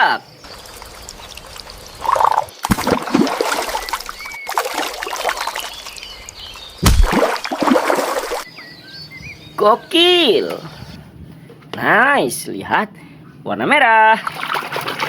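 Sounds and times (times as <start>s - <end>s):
water splashing: 0.4s - 8.5s, 14.2s - 15.0s
loud thump: 6.8s - 7.3s.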